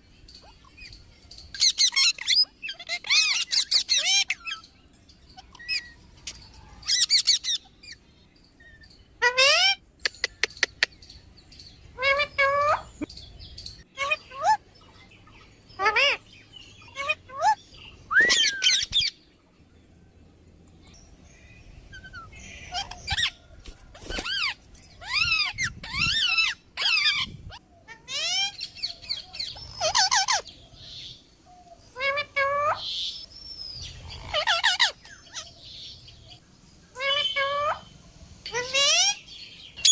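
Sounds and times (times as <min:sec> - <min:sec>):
parrot squawking: 0:01.6 - 0:04.6, 0:09.2 - 0:10.4, 0:14.0 - 0:14.6, 0:15.8 - 0:16.2, 0:16.8 - 0:19.1, 0:29.4 - 0:30.4, 0:34.2 - 0:35.4, 0:37.0 - 0:37.9.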